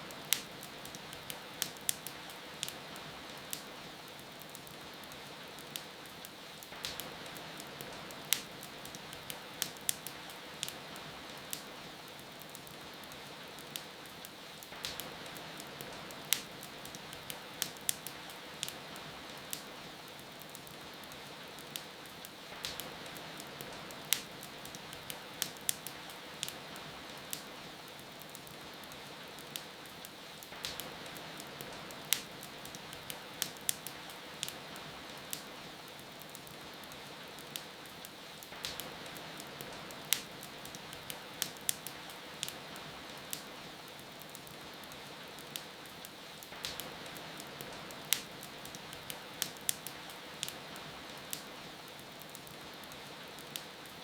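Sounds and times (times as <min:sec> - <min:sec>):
steady rain hiss: 0:00.0 - 0:54.0
wood fire crackling: 0:00.0 - 0:54.0.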